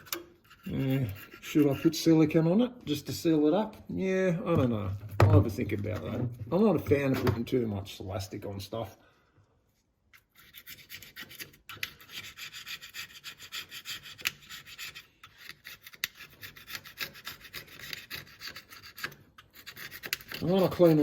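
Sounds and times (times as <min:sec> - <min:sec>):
scraper scraping metal: 0:00.0 - 0:02.1, 0:10.3 - 0:21.0.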